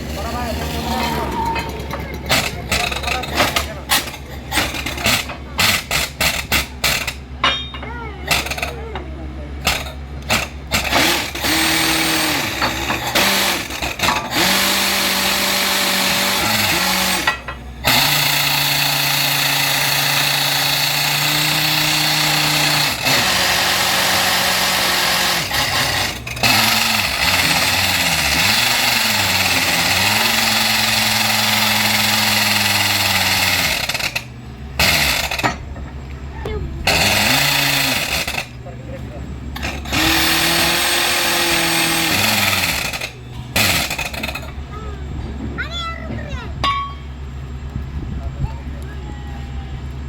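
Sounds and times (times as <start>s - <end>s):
engine note: 0.0s - 7.0s
drilling rig hammering roar: 0.0s - 50.0s.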